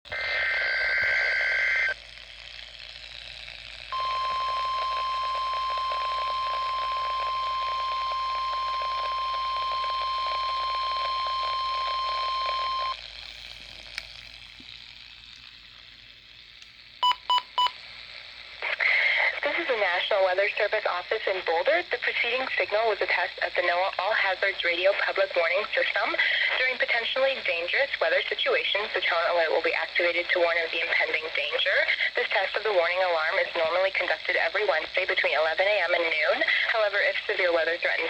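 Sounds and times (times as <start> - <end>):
radio static hiss: 0.1 - 2.0, 17.0 - 38.0
steady warning alarm tone: 3.9 - 13.0
short beeps: 4.0 - 13.0, 17.0 - 17.8.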